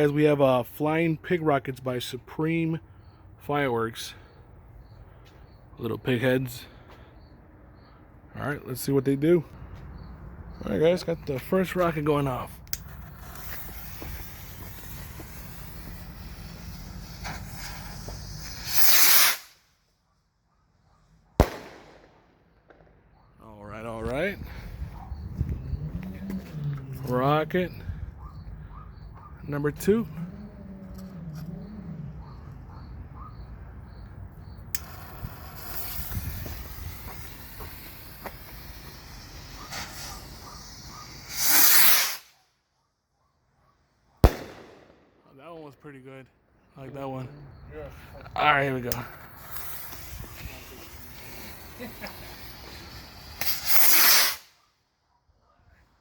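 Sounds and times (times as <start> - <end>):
lit fuse hissing: 12.7 - 19.6, 34.6 - 42.3, 48.8 - 54.5
firework burst: 12.8 - 19.6, 21.4 - 23.1, 34.8 - 42.4, 44.2 - 45.2, 49.2 - 54.5
rocket launch whoosh: 21.4 - 23.0, 34.8 - 42.3, 44.2 - 45.2, 49.3 - 54.5.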